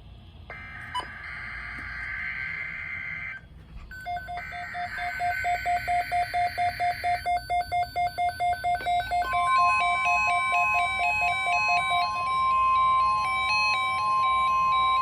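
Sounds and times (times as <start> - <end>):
steady warning alarm tone: 0.4 - 15.0
rapid alarm beeping: 0.5 - 15.0.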